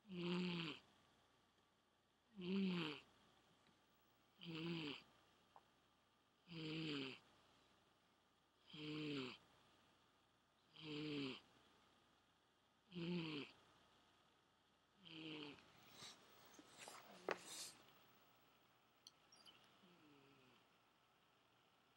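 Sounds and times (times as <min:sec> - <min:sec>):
cat snoring: 0:00.0 - 0:00.9, 0:02.3 - 0:03.1, 0:04.4 - 0:05.1, 0:06.4 - 0:07.3, 0:08.6 - 0:09.4, 0:10.7 - 0:11.5, 0:12.9 - 0:13.6, 0:15.0 - 0:17.8, 0:19.8 - 0:20.6.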